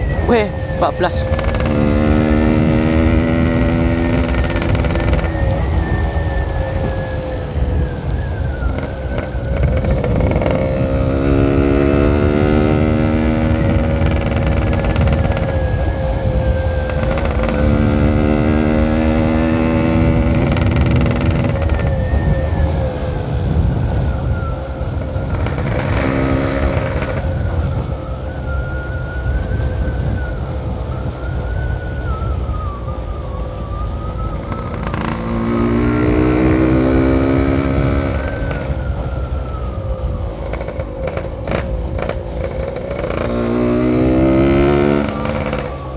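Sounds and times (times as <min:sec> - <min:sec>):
two-stroke motorcycle engine running: 0:00.0 - 0:30.3, 0:34.1 - 0:39.0, 0:40.3 - 0:45.9
low wind rumble: 0:00.0 - 0:45.9.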